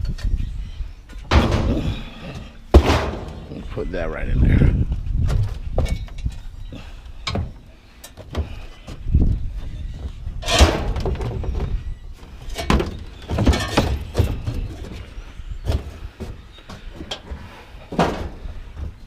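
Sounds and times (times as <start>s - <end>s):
scrap metal clunks and knocks: 1.1s - 3.8s, 10.0s - 19.0s
metal scraping rattle: 1.2s - 3.8s, 10.4s - 11.6s.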